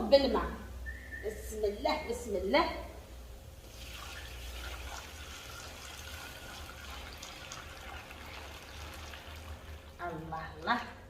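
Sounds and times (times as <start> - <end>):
water poured into hot pot hissing: 3.6 - 10.1.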